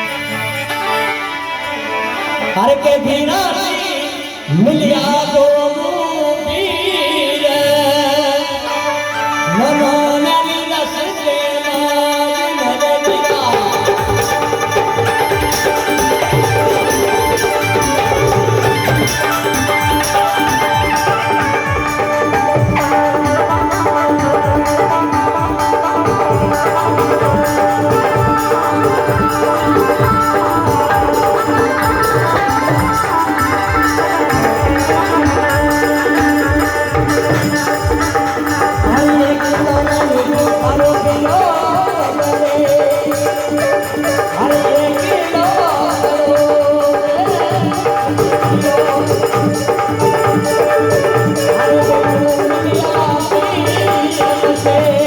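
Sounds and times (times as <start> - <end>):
hand drum rhythm: 13.0 - 55.0.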